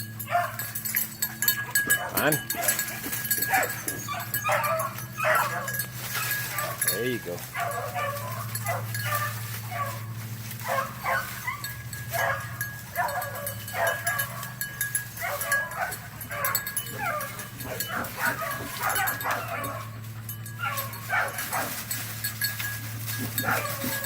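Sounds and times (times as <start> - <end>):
steady low hum: 0.0 - 24.0
puppy barking and yelping: 0.2 - 6.9, 7.5 - 22.0, 23.2 - 24.0.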